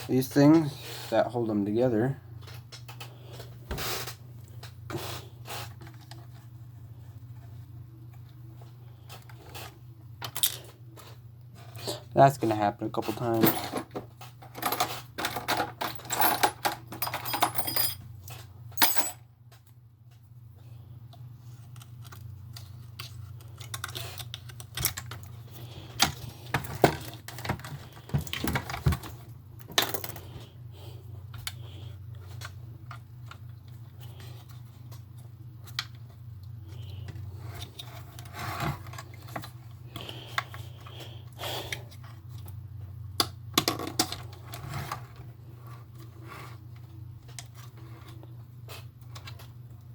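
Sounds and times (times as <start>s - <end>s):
steady low hum: 0.0s - 49.9s
toy parts clicking and rattling: 21.6s - 28.8s.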